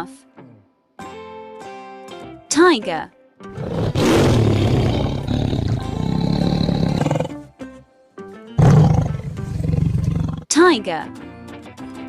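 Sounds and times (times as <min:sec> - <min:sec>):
tiger roaring: 0:03.6 - 0:07.4, 0:08.6 - 0:10.5.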